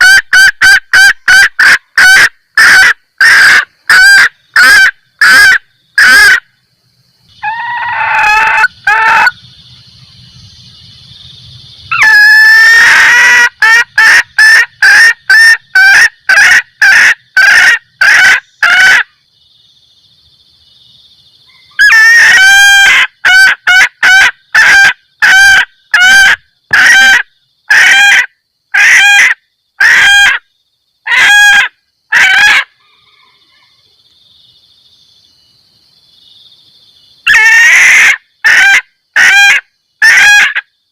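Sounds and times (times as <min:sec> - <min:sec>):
hen cackling: 0:00.0 - 0:06.5, 0:07.3 - 0:09.5, 0:11.9 - 0:19.1, 0:21.5 - 0:33.8, 0:37.2 - 0:40.7.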